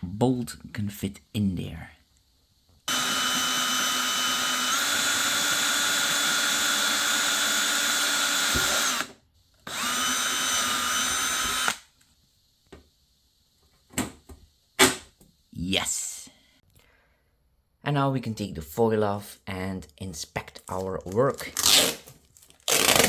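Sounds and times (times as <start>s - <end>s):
power drill drilling plastic: 2.9s - 11.9s.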